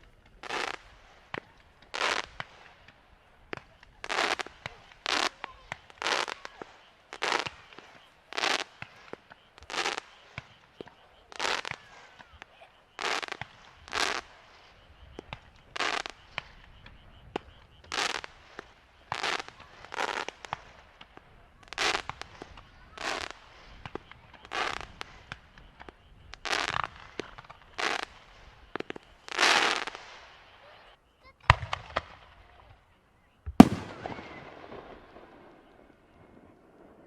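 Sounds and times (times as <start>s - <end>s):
fireworks bursting: 33.6s - 37.0s.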